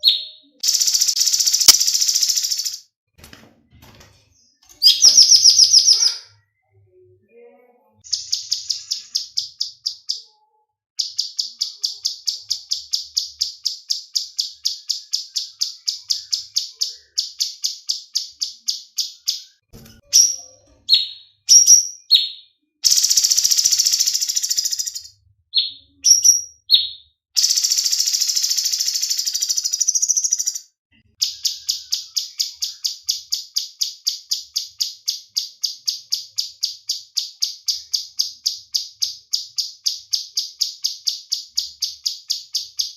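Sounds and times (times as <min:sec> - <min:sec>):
high bird chips: 0:00.0 - 0:02.8, 0:08.0 - 0:10.2.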